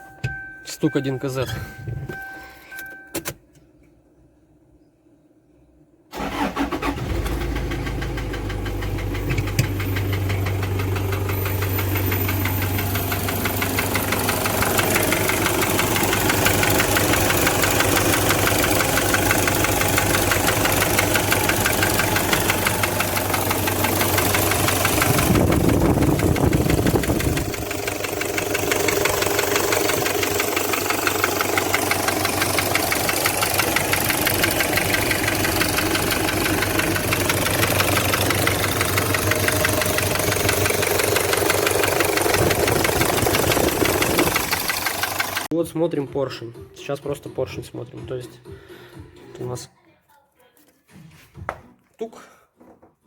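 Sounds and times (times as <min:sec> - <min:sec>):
diesel engine idling with knock: 0:07.2 - 0:45.5.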